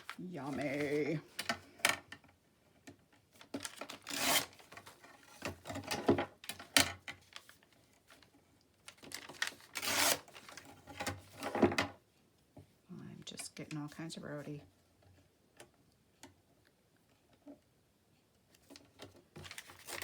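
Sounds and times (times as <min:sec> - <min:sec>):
paper crinkling: 0:00.0 - 0:01.3, 0:03.4 - 0:05.0, 0:07.2 - 0:10.7, 0:18.7 - 0:20.0.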